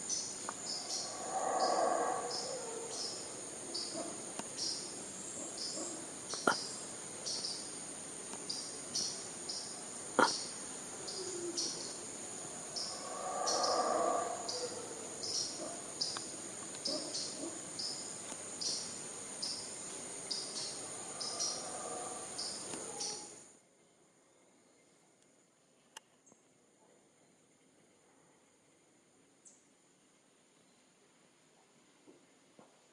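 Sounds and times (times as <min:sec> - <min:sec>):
insect chirp repeating: 0:00.0 - 0:23.6
high-pitched insect drone: 0:00.1 - 0:04.0, 0:08.5 - 0:16.3, 0:17.2 - 0:23.5.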